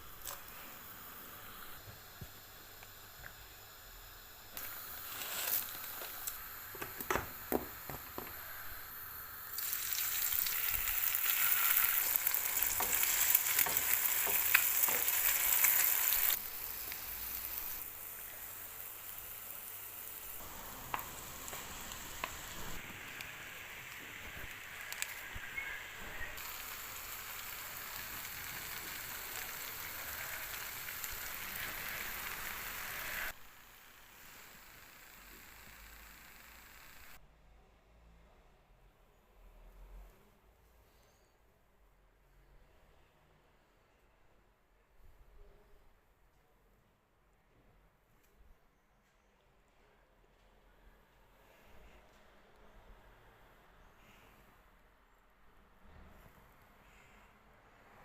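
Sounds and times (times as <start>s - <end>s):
food sizzling in a frying pan: 0.0s - 37.2s.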